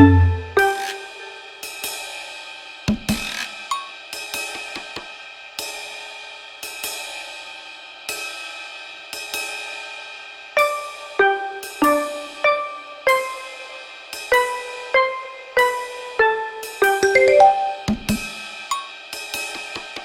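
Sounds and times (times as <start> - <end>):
background music with ringing hits: 0.0 - 1.0.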